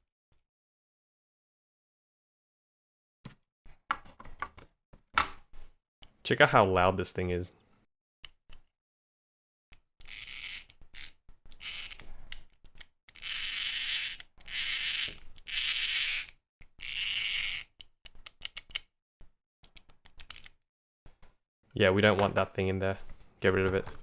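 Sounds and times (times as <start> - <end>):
toy gearbox whirring: 10.0 - 12.0, 13.1 - 18.8.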